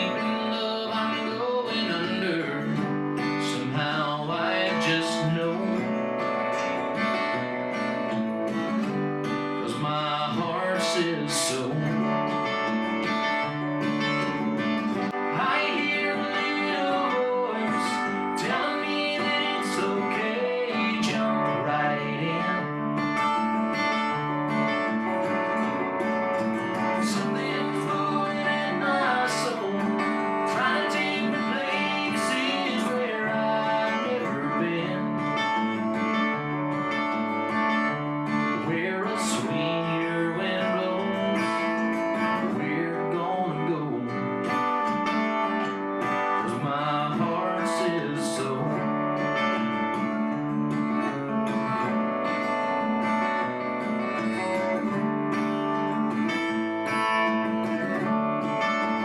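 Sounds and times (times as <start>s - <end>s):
person singing: 0.0s - 5.9s, 9.6s - 12.1s, 15.0s - 23.4s, 26.6s - 35.6s, 38.5s - 41.7s, 42.3s - 44.3s, 46.4s - 48.9s
strummed acoustic guitar: 0.0s - 59.0s.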